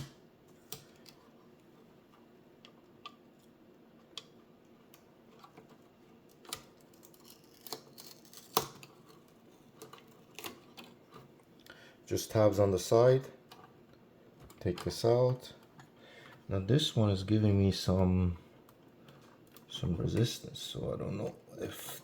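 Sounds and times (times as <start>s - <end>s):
small clicks from hands working: 0.0s - 11.8s.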